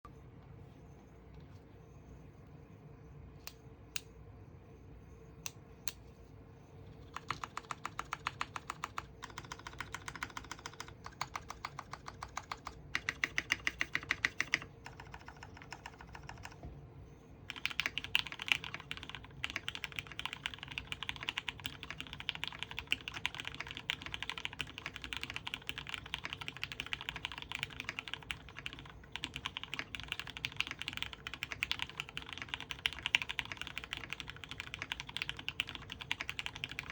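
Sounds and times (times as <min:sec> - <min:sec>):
typing on mechanical keyboard: 0:07.0 - 0:16.6, 0:17.5 - 0:36.9.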